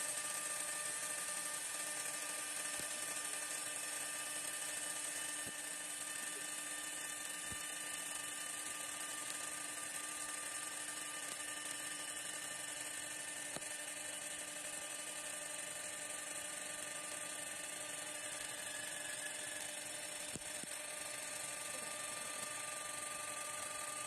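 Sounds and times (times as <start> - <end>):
milling spindle whining: 0.0 - 24.0.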